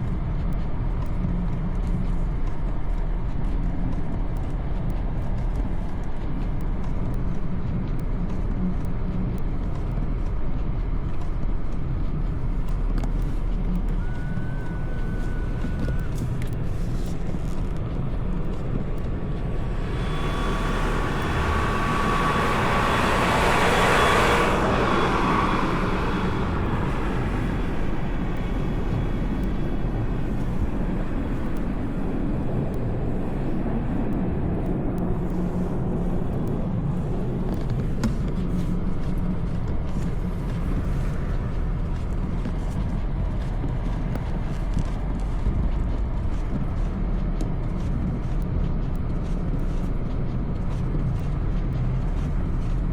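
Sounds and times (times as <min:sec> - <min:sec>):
low rumble of city traffic: 0:00.0 - 0:52.9
vehicle passing with hiss and whine: 0:18.0 - 0:41.4.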